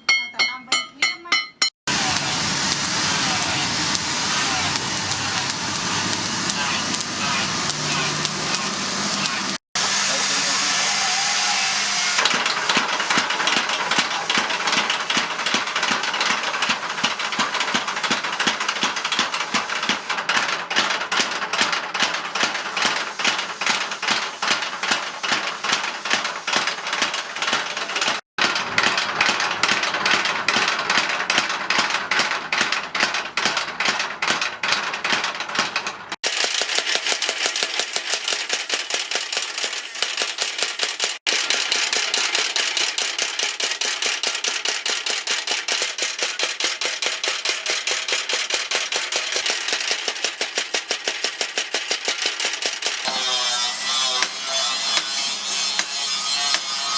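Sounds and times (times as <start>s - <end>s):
hammer blows on metal anvil: 0.0s - 7.0s, 53.1s - 56.9s.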